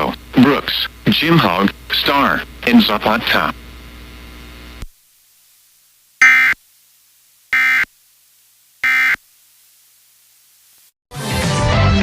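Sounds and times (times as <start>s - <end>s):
digital data tone bursts: 6.2s - 6.6s, 7.6s - 7.9s, 8.8s - 9.2s.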